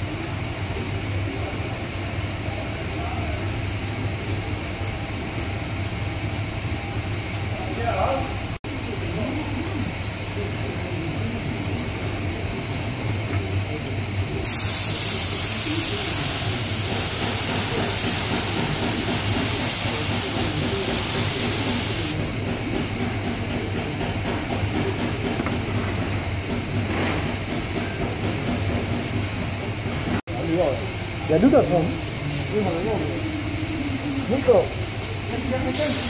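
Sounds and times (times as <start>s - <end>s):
compressed air hissing: 14.4s - 22.2s, 35.6s - 36.0s.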